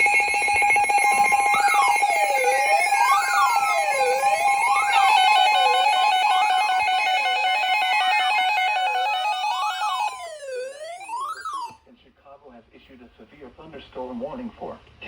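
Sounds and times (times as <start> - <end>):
high electronic tones: 0.0 - 11.8
rapid steady beeping: 0.0 - 11.8
sliding electronic alarm tone: 0.0 - 11.8.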